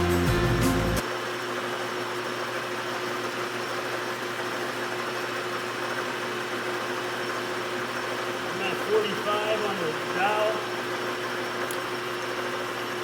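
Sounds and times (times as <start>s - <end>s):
background music: 0.0s - 1.0s
engine lathe humming: 0.1s - 13.0s
constant tone: 8.3s - 11.8s.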